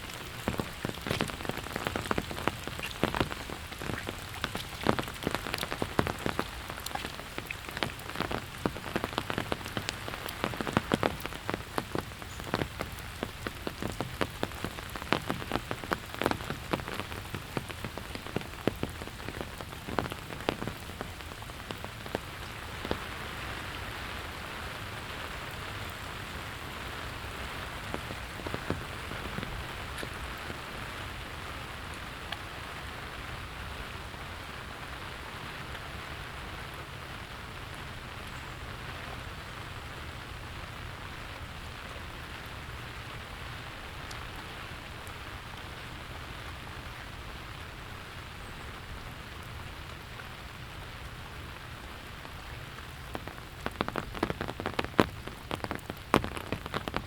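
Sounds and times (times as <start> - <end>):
rain falling: 0.0 - 57.0.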